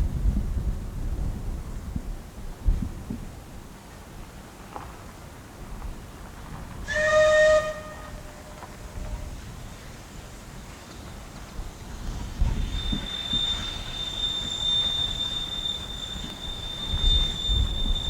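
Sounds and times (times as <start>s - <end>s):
wheels squealing on rails: 6.4s - 18.0s.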